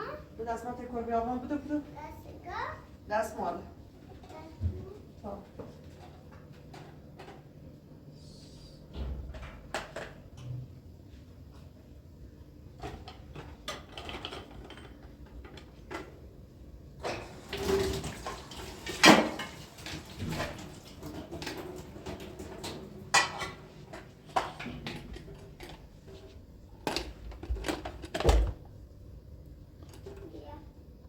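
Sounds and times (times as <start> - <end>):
dishes and pots clattering: 17.0 - 25.8.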